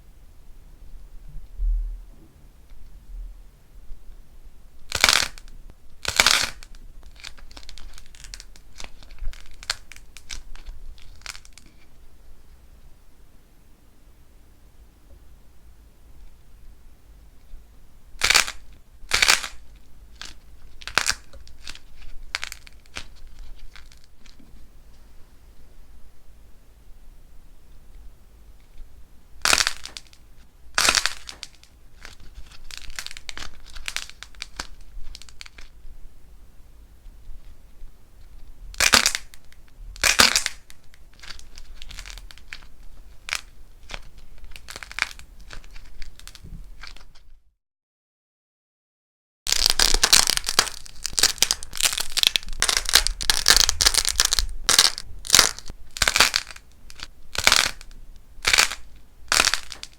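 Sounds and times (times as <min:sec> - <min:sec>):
clay crunching when crushed: 0:04.9 - 0:11.9, 0:18.2 - 0:19.6, 0:20.2 - 0:24.4, 0:38.8 - 0:47.2, 0:49.5 - 0:59.9
dried clay crunching: 0:49.5 - 0:59.9.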